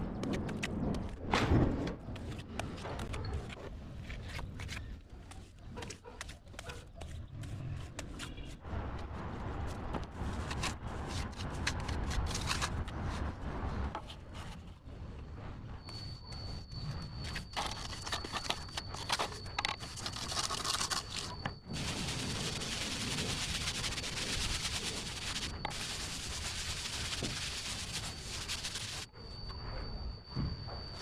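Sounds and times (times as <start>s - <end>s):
thin high whine: 14.9s - 31.0s
scraping on rough surface: 17.2s - 29.1s.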